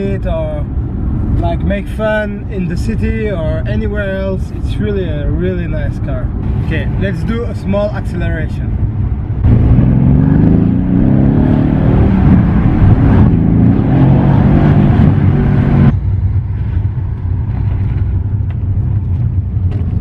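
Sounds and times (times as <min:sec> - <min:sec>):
car engine accelerating: 0:09.4 - 0:20.0.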